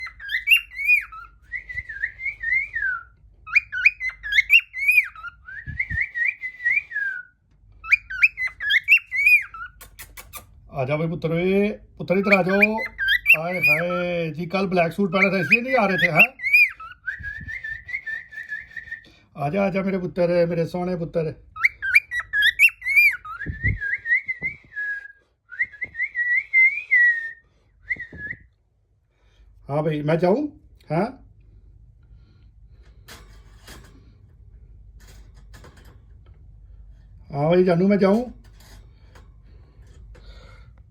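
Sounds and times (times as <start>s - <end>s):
lovebird whistling: 0.0s - 10.4s, 12.2s - 14.0s, 15.1s - 19.0s, 21.6s - 28.5s.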